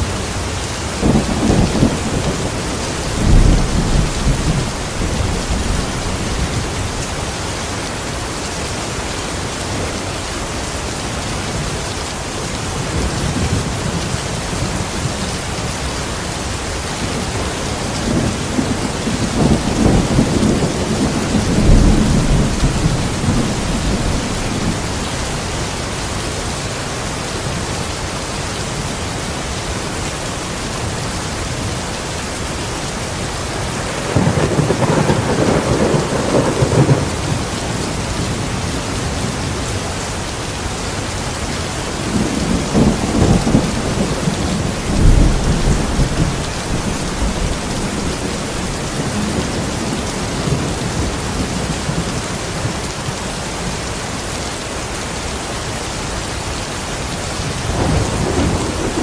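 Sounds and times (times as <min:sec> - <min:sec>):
steady rain: 0:00.0 - 0:59.0
thunder rolling: 0:01.0 - 0:07.4, 0:17.7 - 0:25.5, 0:33.8 - 0:38.6, 0:41.9 - 0:52.8, 0:57.6 - 0:59.0.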